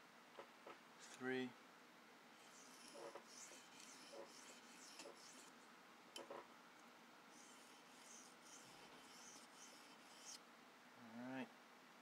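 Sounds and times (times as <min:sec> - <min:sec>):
blade scraping on sharpening stone: 0:02.4 - 0:05.6, 0:07.3 - 0:10.4.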